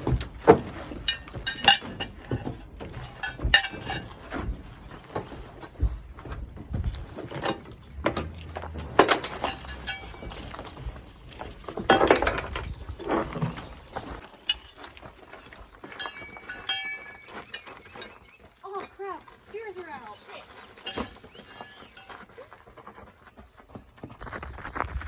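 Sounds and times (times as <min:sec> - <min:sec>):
metal jingling and clinking: 0:00.0 - 0:23.1.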